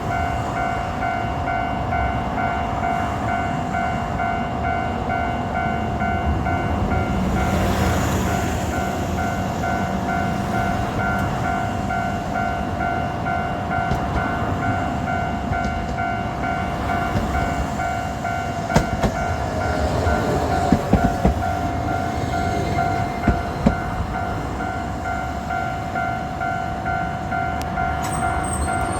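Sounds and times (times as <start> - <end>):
tram rumbling: 0.0 - 28.9
level-crossing alarm ringing: 8.4 - 28.9.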